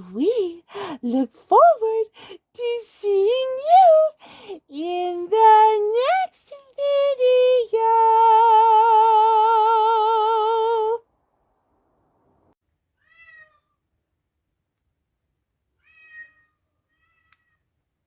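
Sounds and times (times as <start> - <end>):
cat meowing: 13.0 - 13.8, 15.8 - 17.6.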